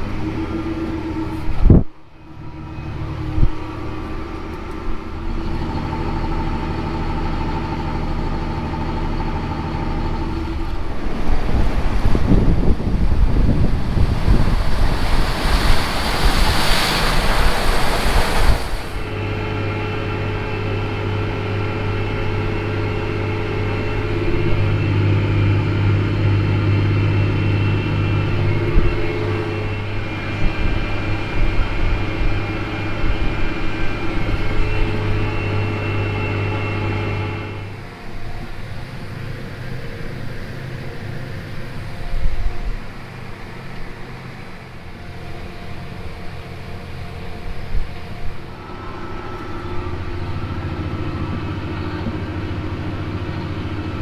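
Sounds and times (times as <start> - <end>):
farm machine engine droning: 0.0 - 54.0
wind buffeting microphone: 10.3 - 19.2.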